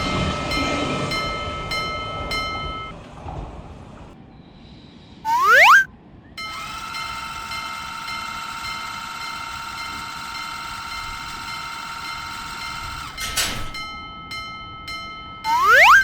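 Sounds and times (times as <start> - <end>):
level crossing bell ringing: 5.3 - 16.0.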